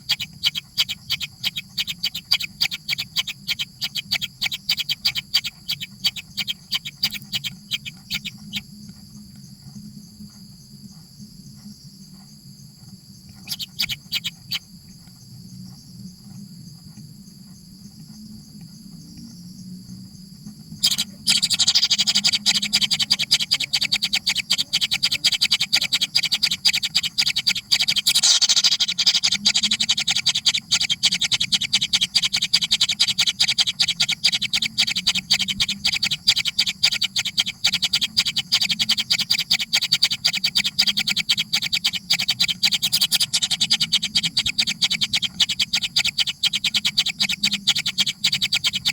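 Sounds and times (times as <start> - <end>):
fast clicking bursts: 0.0 - 8.6, 13.4 - 14.6, 20.8 - 48.9
nestling birds begging calls: 0.0 - 8.6, 13.4 - 14.6, 20.8 - 48.9.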